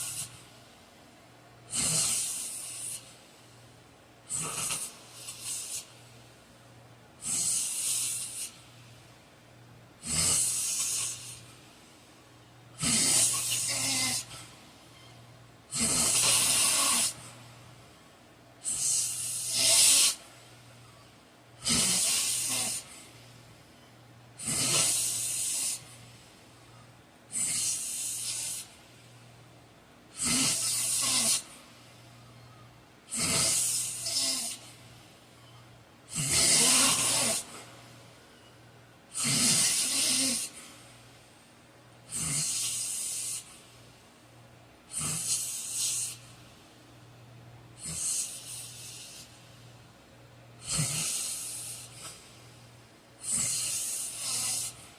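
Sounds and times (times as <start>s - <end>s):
man snoring: 1.7s - 3.0s, 4.3s - 5.9s, 7.2s - 8.5s, 10.0s - 11.4s, 12.8s - 14.4s, 15.7s - 17.3s, 18.6s - 20.2s, 21.6s - 23.0s, 24.4s - 25.9s, 27.3s - 28.7s, 30.1s - 31.5s, 33.1s - 34.7s, 36.1s - 37.6s, 39.1s - 40.6s, 42.1s - 43.5s, 50.6s - 52.0s, 53.2s - 54.8s.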